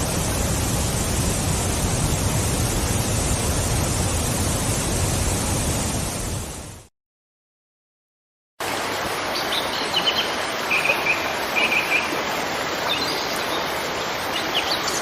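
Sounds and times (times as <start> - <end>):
waterfall rushing: 8.6 - 15.0.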